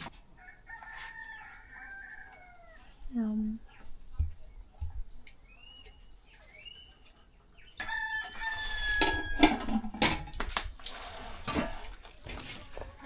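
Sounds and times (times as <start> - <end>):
rooster crowing: 0.4 - 2.9, 7.8 - 9.7
small birds chirping: 2.4 - 8.6.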